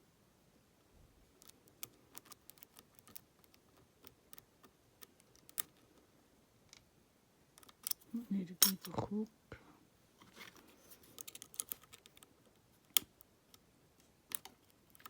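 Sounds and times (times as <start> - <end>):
lock picking metallic clicks: 1.4 - 5.8, 7.6 - 9.0, 11.2 - 13.6, 14.3 - 15.0.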